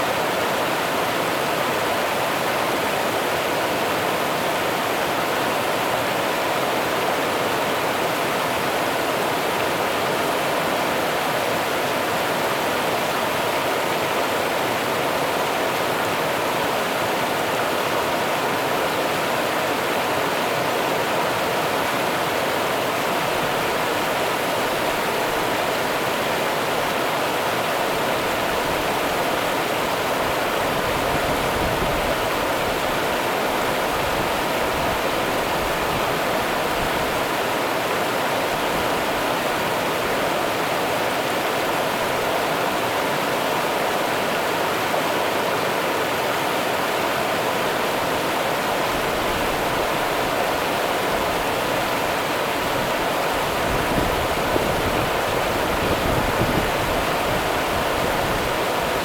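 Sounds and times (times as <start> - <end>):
river water flowing: 0.0 - 59.0.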